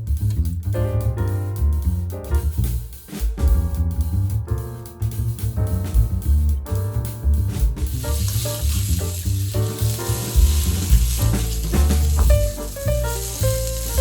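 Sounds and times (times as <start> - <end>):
food sizzling in a hot pan: 8.0 - 14.0.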